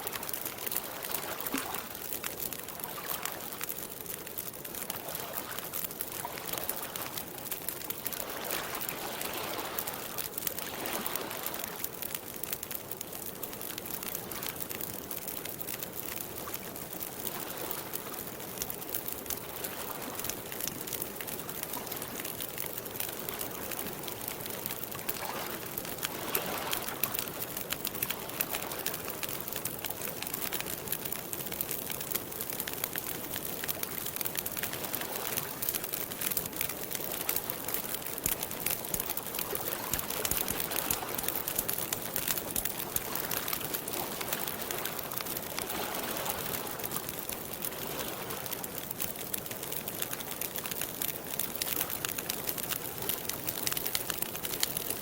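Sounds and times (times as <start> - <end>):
campfire crackling and popping: 0.0 - 55.0
water lapping: 0.1 - 3.7, 5.0 - 11.8, 37.0 - 47.1.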